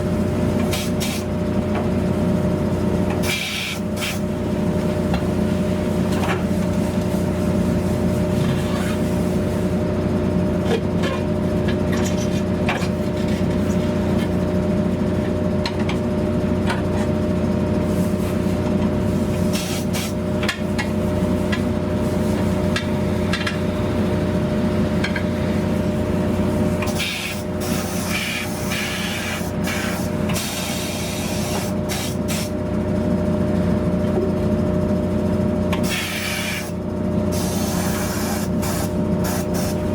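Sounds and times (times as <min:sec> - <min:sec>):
machinery hum: 0:00.0 - 0:39.9
scraping and rubbing of tyre work: 0:08.4 - 0:09.4.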